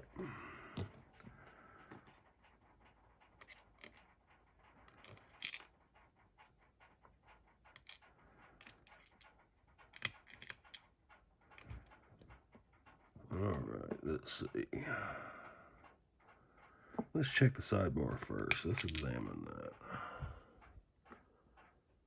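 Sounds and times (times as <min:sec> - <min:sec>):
lock parts clicking and clinking: 0:03.4 - 0:04.0, 0:04.9 - 0:05.7, 0:07.7 - 0:10.9, 0:11.6 - 0:11.9, 0:18.5 - 0:19.2.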